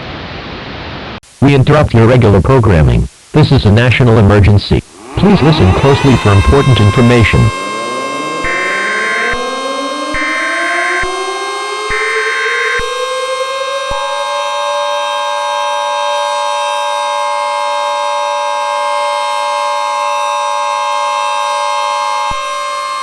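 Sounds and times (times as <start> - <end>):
steady high tone: 4.7 - 23.0
two-tone alert signal: 4.9 - 14.9
civil defense siren: 4.9 - 23.0.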